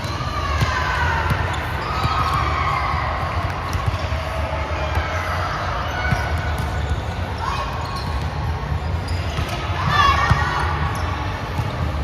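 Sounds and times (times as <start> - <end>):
shoe squeaks: 6.0 - 8.3, 8.9 - 10.0.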